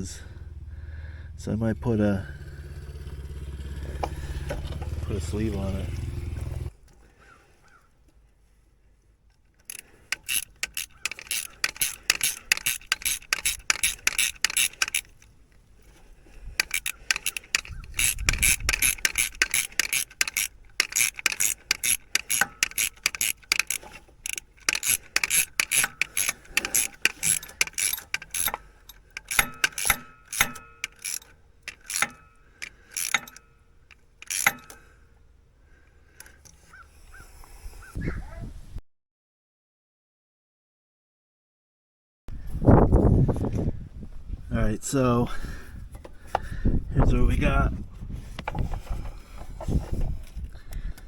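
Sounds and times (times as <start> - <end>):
rapid ratcheting clicks: 9.5 - 35.1.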